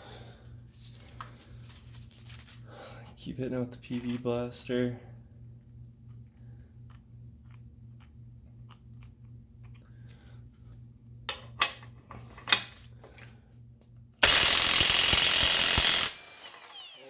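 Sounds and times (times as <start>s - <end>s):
low steady hum: 0.0s - 15.0s
impact wrench hammering: 14.2s - 17.0s.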